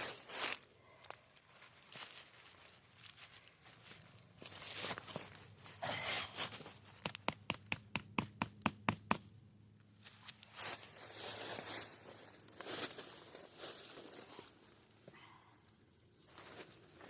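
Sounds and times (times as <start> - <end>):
rustling: 0.0 - 7.2.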